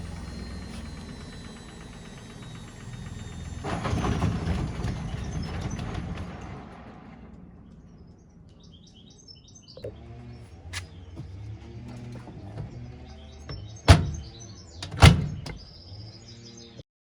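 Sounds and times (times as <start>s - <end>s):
washing machine humming: 9.8s - 15.8s.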